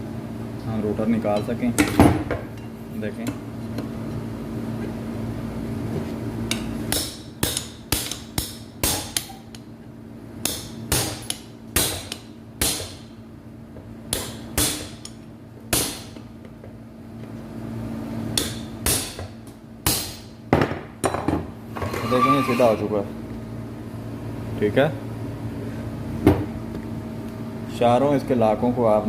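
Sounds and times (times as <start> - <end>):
hammer striking a chisel: 6.5 - 9.6, 10.4 - 13.0, 14.1 - 16.2, 18.3 - 20.3.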